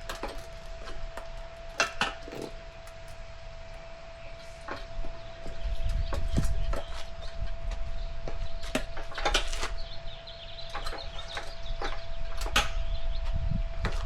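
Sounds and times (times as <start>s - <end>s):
tire levers clicking and scraping: 0.0s - 3.8s.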